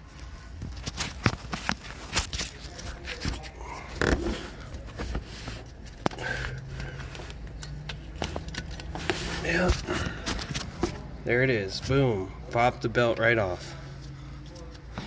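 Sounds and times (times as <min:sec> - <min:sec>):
metal clicks and scrapes of tools: 0:05.6 - 0:11.0.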